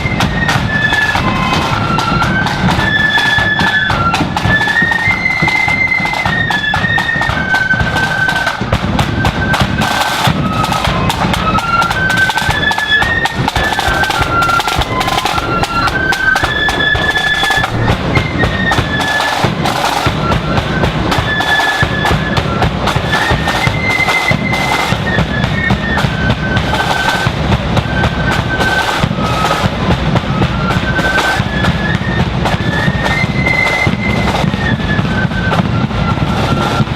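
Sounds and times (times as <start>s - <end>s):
flutes playing melody in unison: 0.0s - 36.9s
snare drums: 0.0s - 36.9s.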